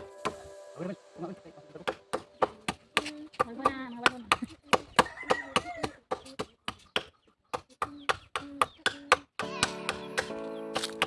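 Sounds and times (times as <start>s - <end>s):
voices talking: 0.0s - 6.9s
hand tool sharp blows: 1.8s - 11.0s.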